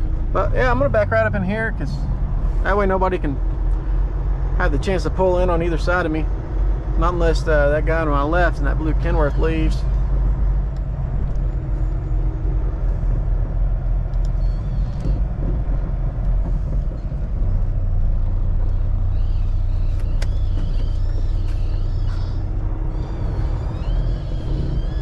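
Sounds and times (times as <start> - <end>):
diesel truck engine rumbling: 0.0 - 25.0
wavering high squeals: 18.7 - 25.0.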